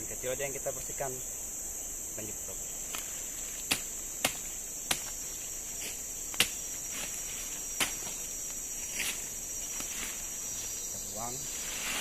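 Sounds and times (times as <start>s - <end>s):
forest insects droning: 0.0s - 12.0s
blade chopping saplings: 2.9s - 8.2s.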